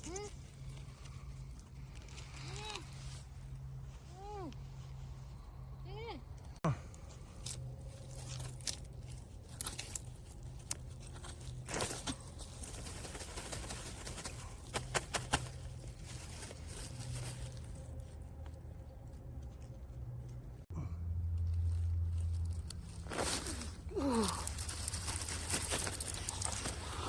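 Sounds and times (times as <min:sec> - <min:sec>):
steady low hum: 0:00.0 - 0:27.0
rustling and crackling: 0:06.3 - 0:20.7, 0:21.4 - 0:27.0.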